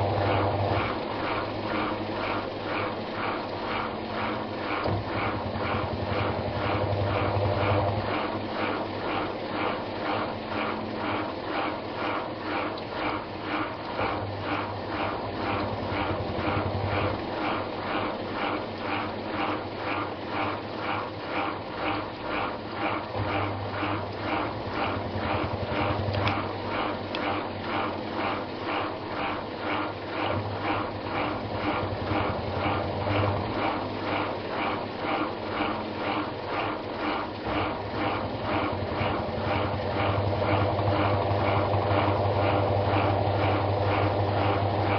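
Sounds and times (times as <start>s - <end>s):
washing machine churning: 0.0s - 44.9s.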